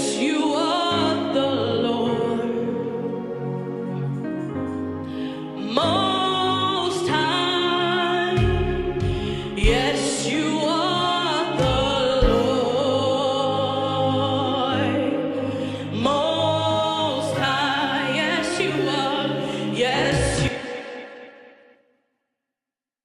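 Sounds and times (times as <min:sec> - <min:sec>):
low musical accompaniment: 0:00.0 - 0:20.7
voices singing praise song: 0:09.1 - 0:21.3.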